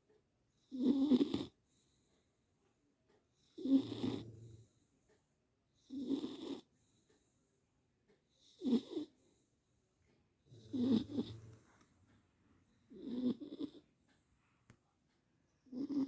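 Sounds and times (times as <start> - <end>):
dog snoring: 0.6 - 1.8, 3.4 - 4.9, 5.8 - 6.7, 8.4 - 9.4, 10.4 - 11.8, 12.9 - 13.9, 15.6 - 16.0.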